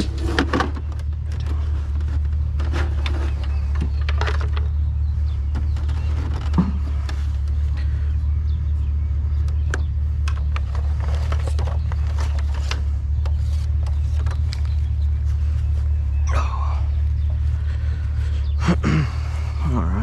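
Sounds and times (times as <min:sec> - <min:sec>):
truck engine drone in cab: 0:00.0 - 0:20.0.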